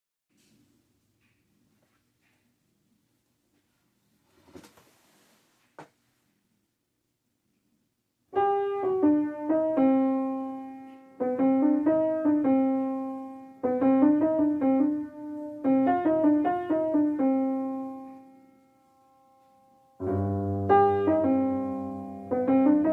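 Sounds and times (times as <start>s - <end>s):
piano music: 8.4s - 22.9s.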